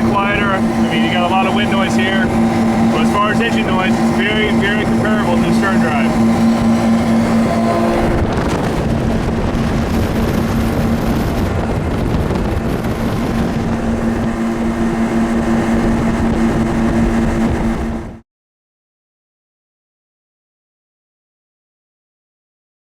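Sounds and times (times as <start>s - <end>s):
boat engines humming: 0.0s - 18.2s
rush of wind and water: 0.0s - 18.2s.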